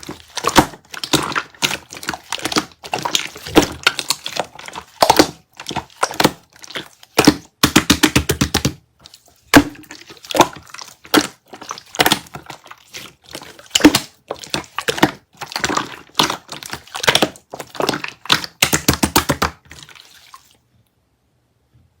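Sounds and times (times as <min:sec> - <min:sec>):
slime squished by hand: 0:00.0 - 0:20.6.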